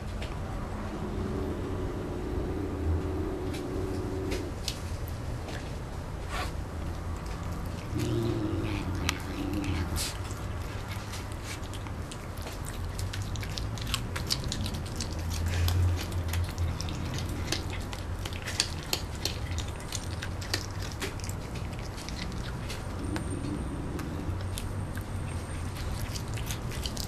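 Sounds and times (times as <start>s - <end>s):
low hum: 0.0s - 5.5s
cat chewing wetly: 6.8s - 27.0s.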